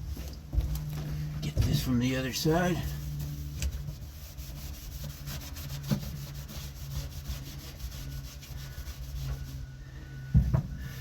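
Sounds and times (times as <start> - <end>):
cloth rubbing on painted metal: 0.0 - 9.9.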